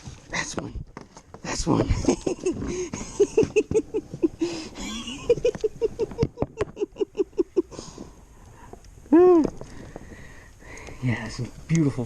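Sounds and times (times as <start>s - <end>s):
person laughing: 1.8s - 8.0s.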